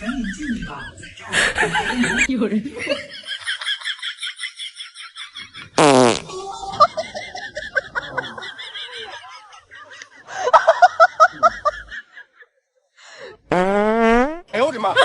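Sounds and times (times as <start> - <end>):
balloon fart noise: 5.8 - 6.4, 13.5 - 14.5.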